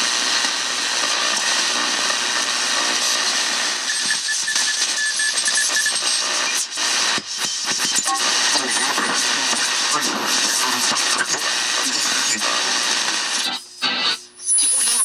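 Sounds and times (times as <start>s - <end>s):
shortwave radio static hiss: 0.0s - 3.9s, 6.0s - 15.0s
faint whistling radio tones: 3.3s - 6.7s, 7.4s - 15.0s.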